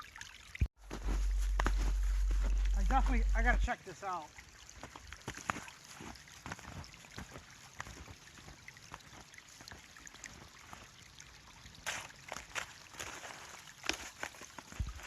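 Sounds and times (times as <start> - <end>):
stream trickling under ice: 0.0 - 15.0
snowshoe steps crunching snow: 0.8 - 3.6, 11.9 - 15.0.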